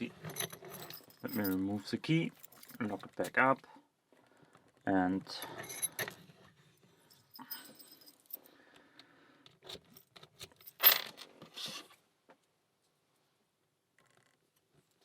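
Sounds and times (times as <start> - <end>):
metallic clink and rattle: 0.2 - 3.4, 5.3 - 6.3, 7.0 - 8.5, 9.7 - 11.2.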